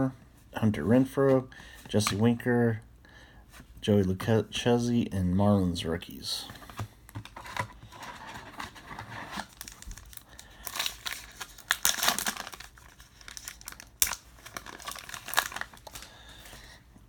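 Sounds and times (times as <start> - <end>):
wrapper crinkling and tearing: 7.2 - 16.5.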